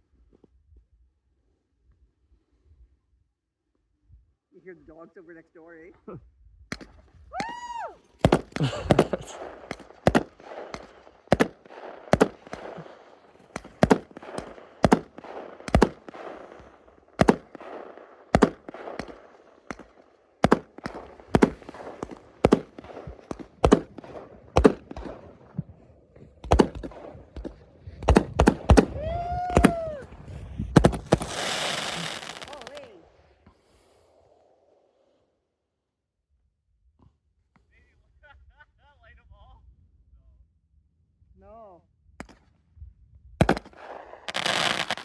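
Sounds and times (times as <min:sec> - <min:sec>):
fireworks exploding: 0:06.7 - 0:34.8, 0:43.4 - 0:45.0
short rising and falling wail: 0:07.3 - 0:08.0, 0:28.8 - 0:30.2.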